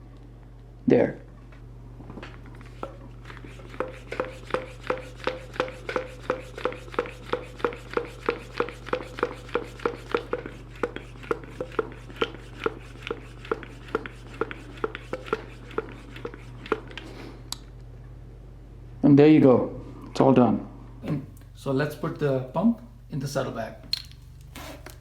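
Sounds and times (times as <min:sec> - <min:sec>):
hand pump strokes: 0:02.5 - 0:17.2, 0:24.5 - 0:25.0.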